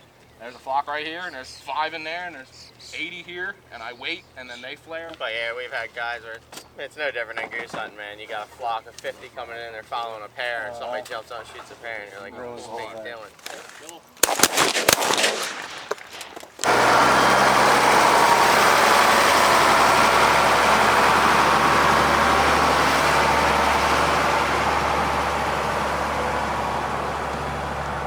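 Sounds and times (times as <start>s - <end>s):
shotgun blasts: 14.2s - 16.7s.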